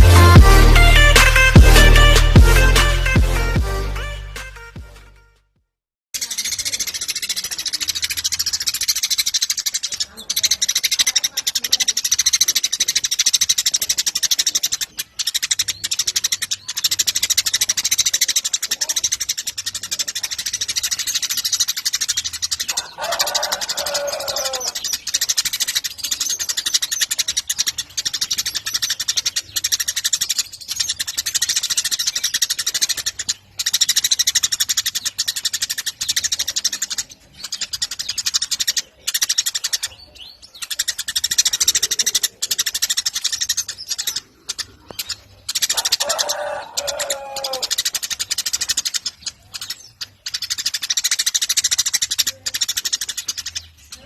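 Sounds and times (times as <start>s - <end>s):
sparrow chirping: 6.2s - 54.0s
lower falling bird call: 41.2s - 52.4s.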